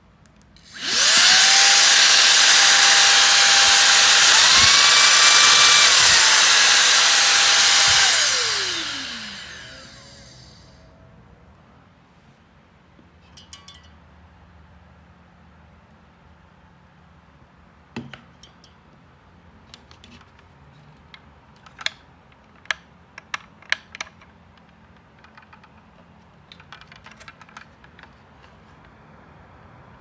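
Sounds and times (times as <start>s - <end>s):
small parts clicking and tapping: 19.6s - 29.0s.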